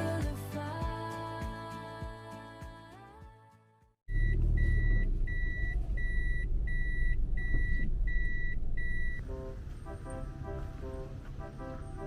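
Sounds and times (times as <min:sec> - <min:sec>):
vehicle reversing beeps: 0:04.1 - 0:10.2
engine and road rumble: 0:04.1 - 0:12.0
soft background music: 0:09.3 - 0:12.0.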